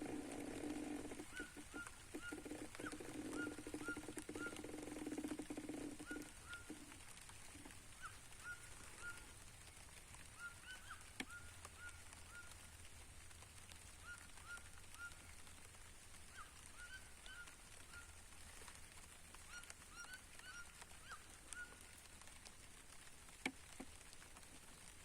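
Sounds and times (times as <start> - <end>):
birds calling: 0.0 - 9.4, 10.3 - 12.6, 16.3 - 18.2, 19.5 - 22.0.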